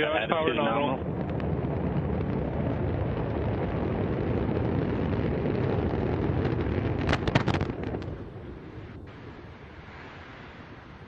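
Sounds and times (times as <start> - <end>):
rocket engines rumbling: 0.0 - 11.0
sharp cracks: 1.0 - 8.4.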